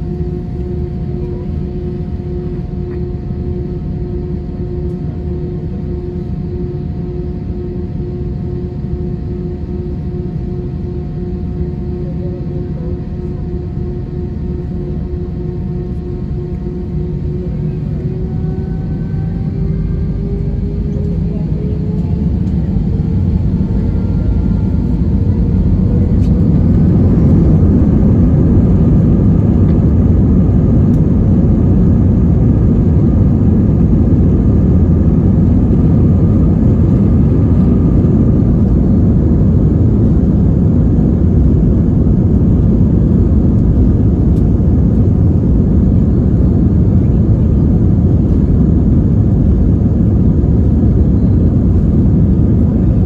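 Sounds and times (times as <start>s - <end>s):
faint engine whine: 0.0s - 53.0s
jet engines roaring: 12.8s - 53.0s.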